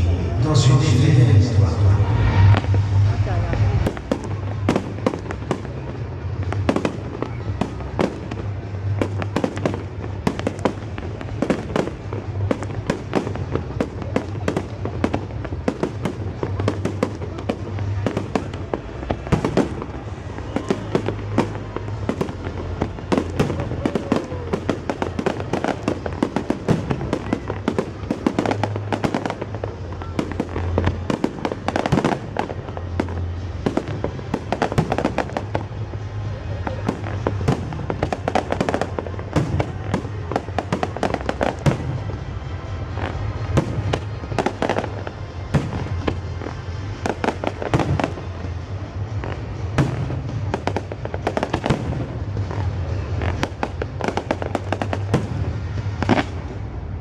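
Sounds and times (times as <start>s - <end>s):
fireworks bangs and crackles: 0.0s - 57.0s.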